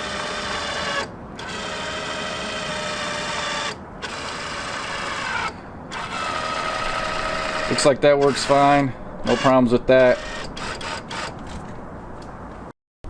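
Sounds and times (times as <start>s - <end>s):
mirror motor whirring: 0.0s - 11.7s.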